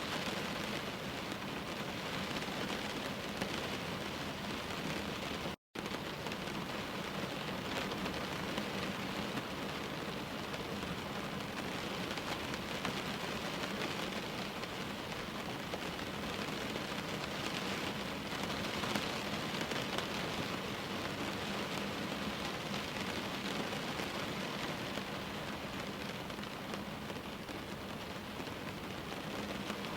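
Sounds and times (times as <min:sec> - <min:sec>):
steady rain falling: 0:00.0 - 0:29.9.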